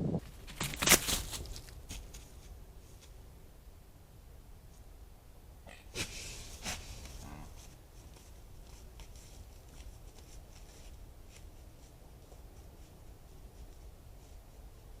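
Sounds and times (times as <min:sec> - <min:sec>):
deer snorting: 0:05.6 - 0:07.8
faint rustling: 0:05.7 - 0:15.0.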